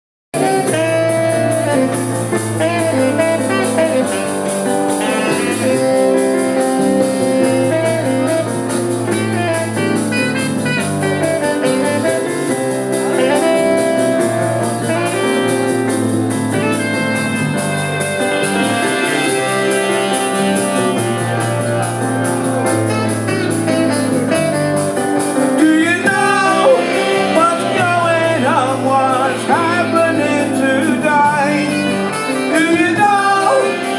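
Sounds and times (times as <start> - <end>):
horn section: 0.4 - 33.9
rock band playing live: 0.4 - 33.9
person singing: 25.4 - 33.9.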